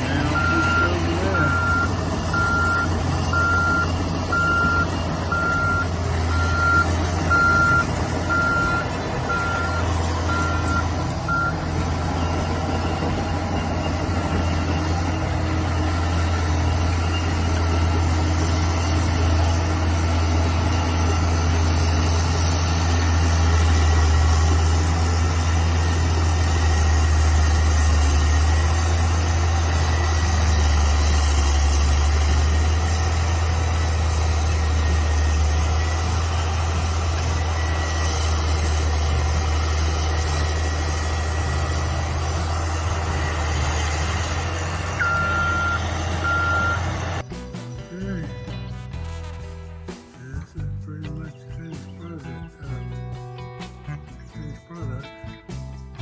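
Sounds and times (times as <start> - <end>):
bulldozer diesel engine: 0.0 - 56.0
backup alarm beeping: 0.1 - 13.2, 45.0 - 46.9.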